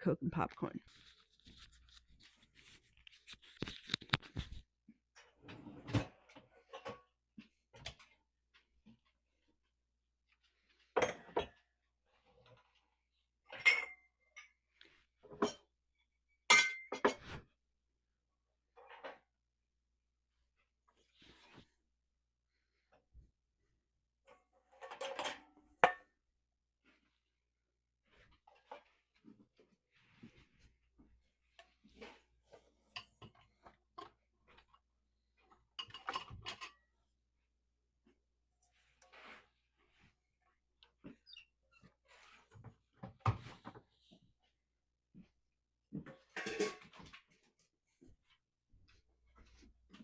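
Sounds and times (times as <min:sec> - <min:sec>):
dishes and cutlery clinking: 0:13.5 - 0:14.6, 0:35.7 - 0:36.9, 0:46.1 - 0:47.3.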